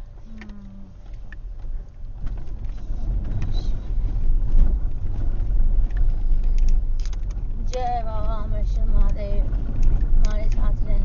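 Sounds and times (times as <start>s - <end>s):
car rumbling over dirt track: 0.0s - 11.0s.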